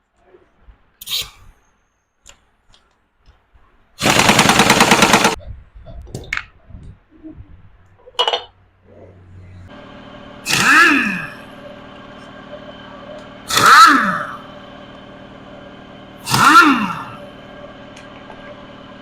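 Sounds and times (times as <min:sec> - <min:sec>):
impact wrench hammering: 0:10.4 - 0:12.3, 0:13.2 - 0:14.5, 0:16.2 - 0:17.2.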